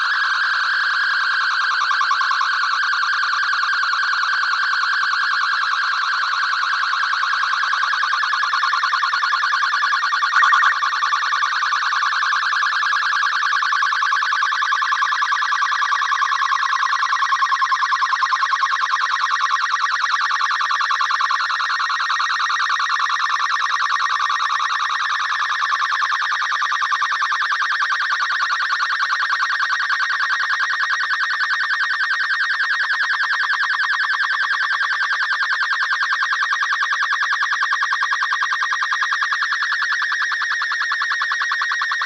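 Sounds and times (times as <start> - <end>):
warbling digital data signal: 10.3 - 10.9.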